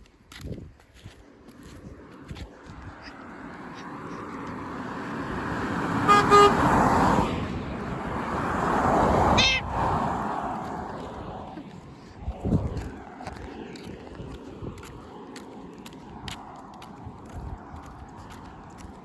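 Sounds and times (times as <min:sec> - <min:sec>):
passing traffic: 0:00.9 - 0:19.0
car horn toots: 0:05.9 - 0:07.1, 0:09.2 - 0:09.9.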